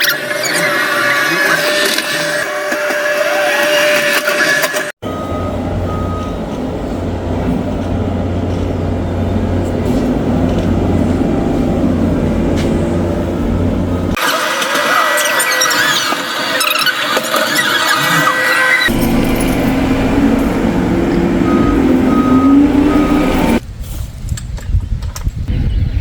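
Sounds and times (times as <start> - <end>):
engine rumbling under work: 3.9 - 14.2, 18.9 - 23.8.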